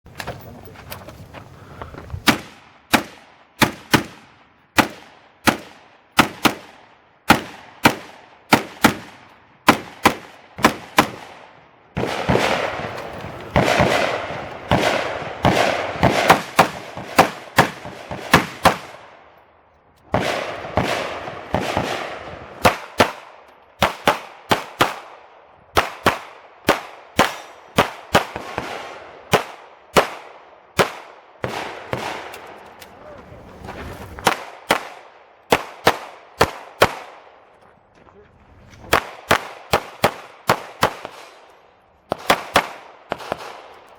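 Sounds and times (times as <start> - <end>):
gunshots with short echo: 12.0 - 19.0, 30.8 - 32.6.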